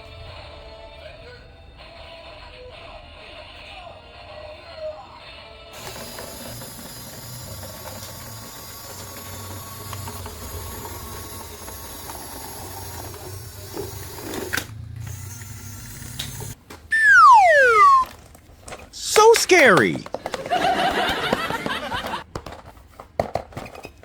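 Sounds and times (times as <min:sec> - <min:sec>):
geared mechanism whirring: 0:05.8 - 0:18.0.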